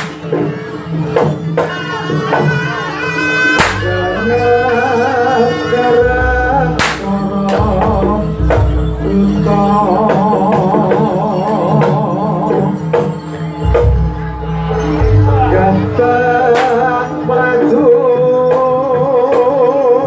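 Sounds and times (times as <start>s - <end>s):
loud sharp crack: 0.0s - 0.2s, 3.6s - 3.9s, 6.8s - 7.2s
drumming and percussion: 0.0s - 4.2s, 5.8s - 20.0s
wavering sung melody: 0.6s - 20.0s.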